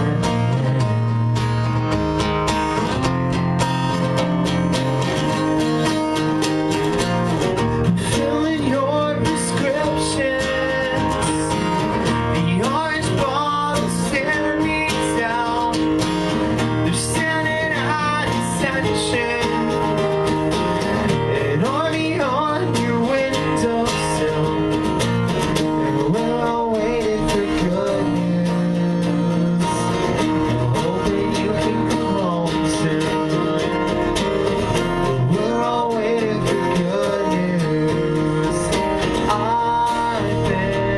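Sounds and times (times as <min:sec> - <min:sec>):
strummed guitar chords: 0:00.0 - 0:40.9
person singing: 0:07.4 - 0:40.9.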